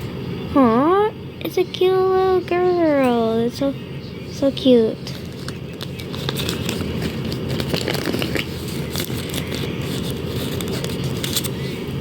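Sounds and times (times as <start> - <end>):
packaging crinkling and rustling: 5.1 - 11.7.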